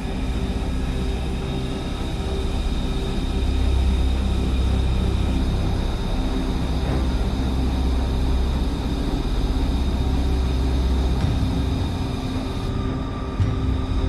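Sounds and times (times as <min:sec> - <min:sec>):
jet engine rumble: 0:05.9 - 0:12.8.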